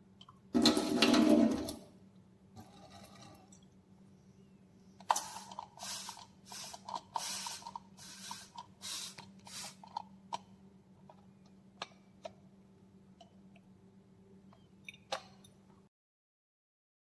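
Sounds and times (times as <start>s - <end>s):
oil sprayer hissing: 5.1s - 9.9s.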